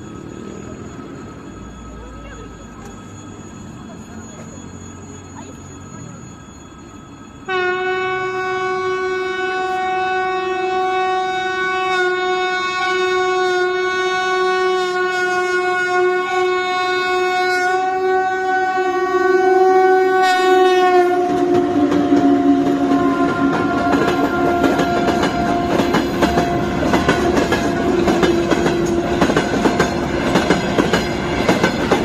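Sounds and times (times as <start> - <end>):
train passing rumble: 0.0 - 32.0
locomotive air horn: 7.5 - 30.1.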